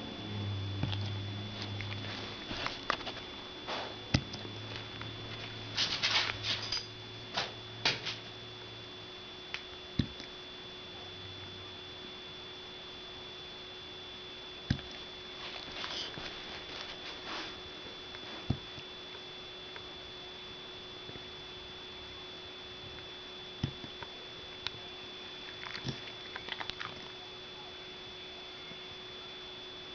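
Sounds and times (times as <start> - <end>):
soft scuffling and patter: 15.4 - 18.5.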